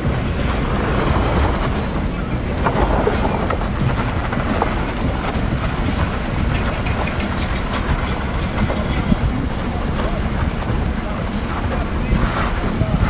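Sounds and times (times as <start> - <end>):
wheels rolling over dirt trail: 0.0 - 13.0.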